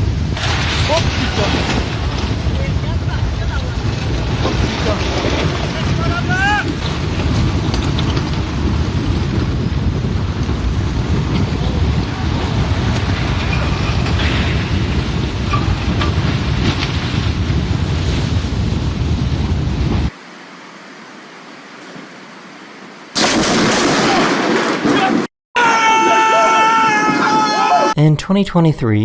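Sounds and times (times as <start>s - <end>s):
mudslide rushing rumble: 0.0s - 20.2s.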